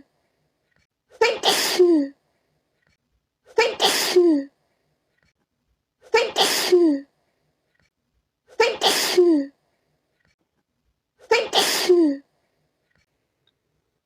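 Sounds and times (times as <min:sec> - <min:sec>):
person sneezing: 0:01.1 - 0:02.1, 0:03.5 - 0:04.5, 0:06.0 - 0:07.1, 0:08.5 - 0:09.5, 0:11.2 - 0:12.2.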